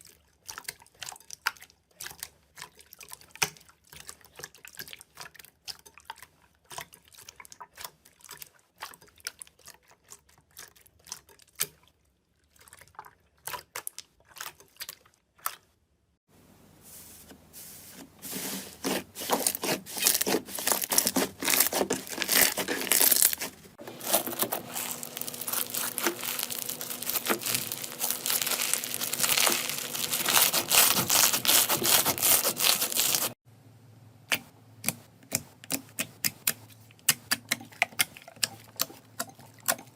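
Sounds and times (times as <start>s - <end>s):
slime squishing with sticky clicks: 24.0s - 32.4s, 34.3s - 39.9s.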